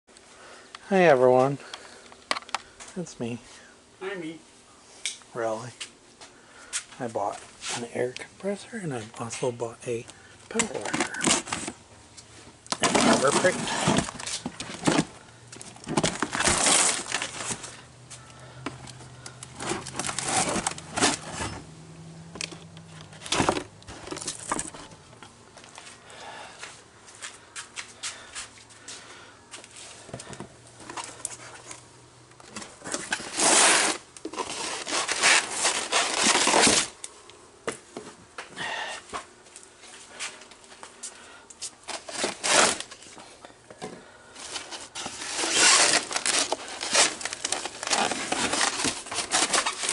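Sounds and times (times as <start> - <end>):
packaging crinkling and tearing: 10.5 - 11.8, 12.7 - 21.5, 32.4 - 37.0, 41.8 - 43.1, 44.4 - 49.9.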